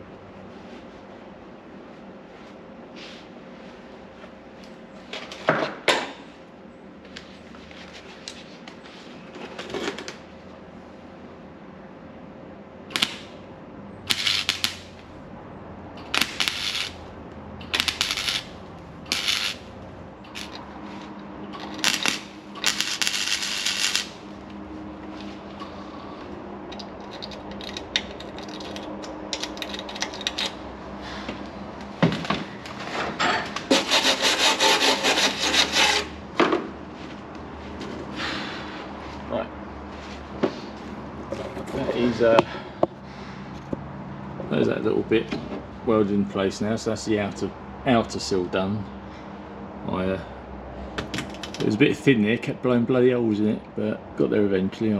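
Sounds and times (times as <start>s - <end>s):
welding arc crackle: 12.9s - 13.4s, 14.0s - 15.1s, 16.0s - 20.8s, 21.6s - 24.4s.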